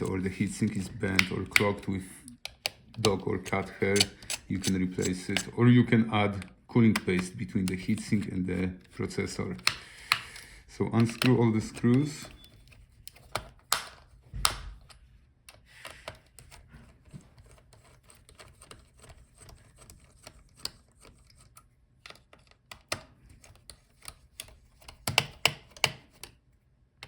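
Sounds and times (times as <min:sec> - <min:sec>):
screwdriver clicking on screws: 0:02.4 - 0:05.6.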